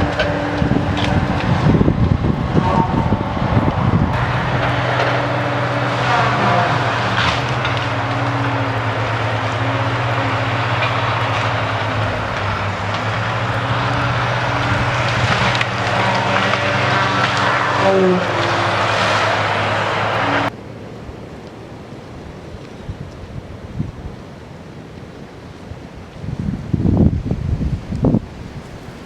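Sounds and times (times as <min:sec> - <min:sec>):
engine running steadily: 0:00.0 - 0:20.6
wind buffeting microphone: 0:00.0 - 0:24.3, 0:25.6 - 0:29.0.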